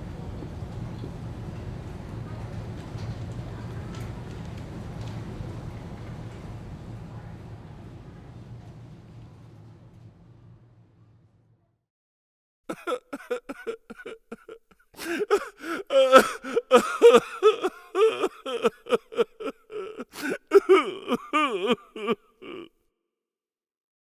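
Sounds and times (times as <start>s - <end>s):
high-pitched voice vocalizing: 12.7s - 22.7s.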